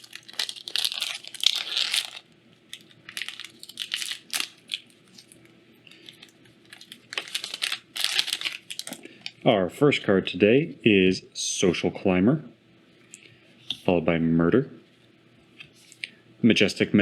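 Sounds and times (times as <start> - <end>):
foil wrapper tearing and crinkling: 0.0 - 5.4, 6.0 - 9.0.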